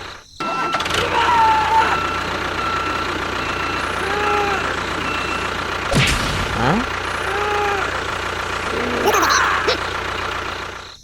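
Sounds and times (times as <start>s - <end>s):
engine-like running noise: 0.0s - 11.0s.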